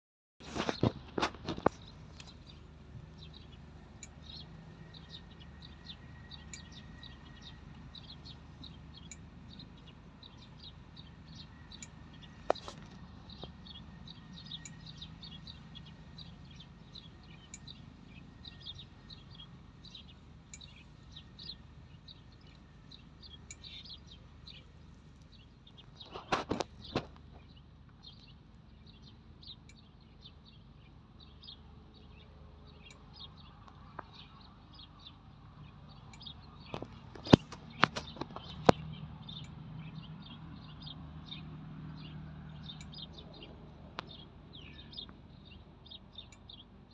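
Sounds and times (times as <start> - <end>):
small birds chirping: 0.4 - 46.9
low background hum: 0.6 - 46.9.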